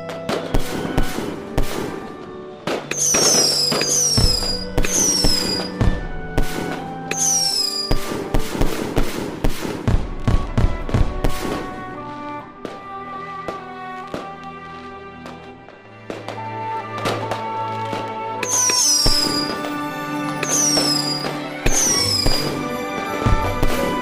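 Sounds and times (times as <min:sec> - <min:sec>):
fireworks bangs and crackles: 0:00.0 - 0:24.0
music: 0:00.0 - 0:24.0
falling firework whistles: 0:02.7 - 0:11.8, 0:18.4 - 0:24.0.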